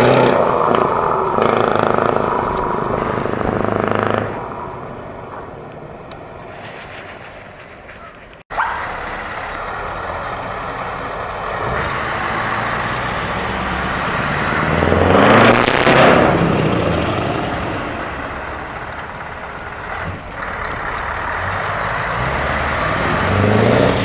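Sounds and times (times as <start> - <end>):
truck engine revving: 0.0 - 24.0.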